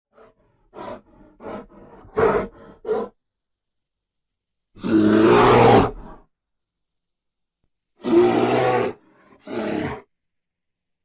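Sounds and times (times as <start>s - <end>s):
bear growling: 0.2s - 3.2s, 4.8s - 6.3s.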